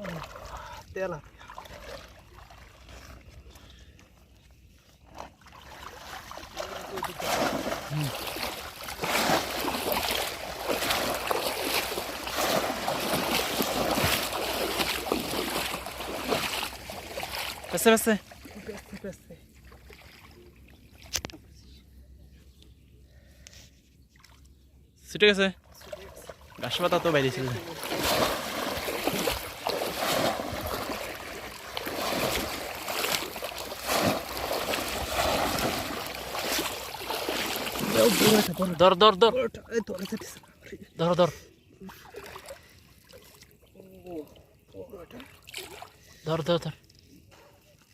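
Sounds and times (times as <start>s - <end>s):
shallow water splashing: 0.0s - 4.0s, 5.0s - 21.3s, 25.6s - 39.1s, 41.9s - 47.5s.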